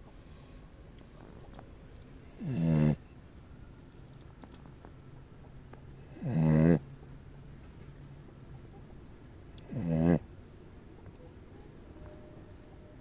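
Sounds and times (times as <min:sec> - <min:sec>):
dog snoring: 0:02.3 - 0:03.0, 0:06.0 - 0:06.9, 0:09.6 - 0:10.3.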